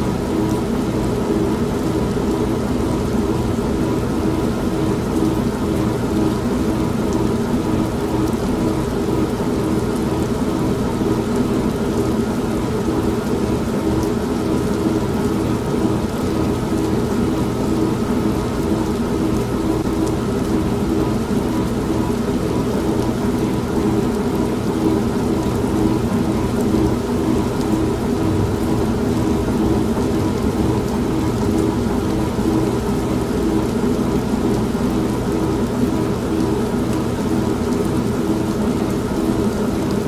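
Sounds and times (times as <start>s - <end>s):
heavy rain: 0.0s - 40.0s
washing machine motor hum: 0.0s - 40.0s
thunder rumble: 26.2s - 33.2s.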